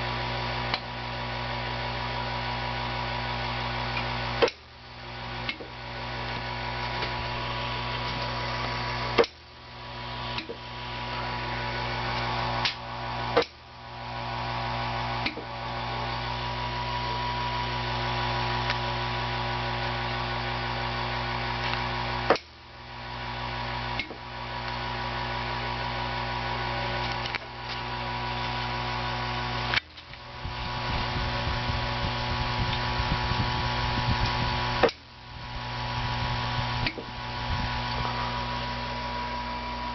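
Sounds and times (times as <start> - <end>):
electrical hum: 0.0 - 39.9
vacuum tubes ticking: 12.1 - 13.7, 29.7 - 38.1.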